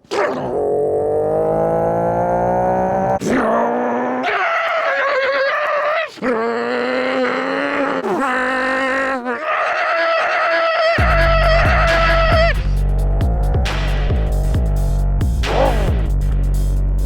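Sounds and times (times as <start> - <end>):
man imitating car engine: 0.0 - 9.5, 10.8 - 16.2
deep steady hum: 11.0 - 17.0.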